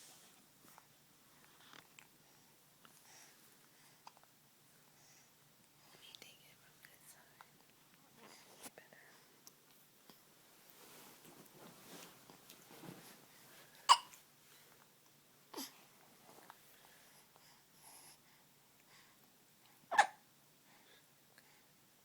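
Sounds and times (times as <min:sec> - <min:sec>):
person hiccuping: 0:13.9 - 0:14.1.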